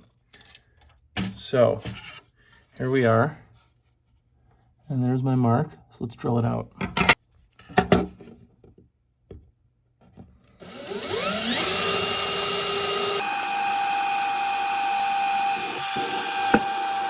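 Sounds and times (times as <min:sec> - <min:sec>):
electric drill whine: 0:10.6 - 0:17.0.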